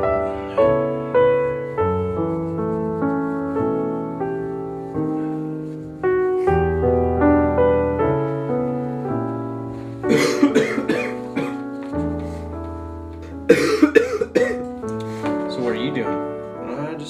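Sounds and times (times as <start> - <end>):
piano music: 0.0 - 17.0
person coughing: 10.1 - 11.6, 13.5 - 14.6.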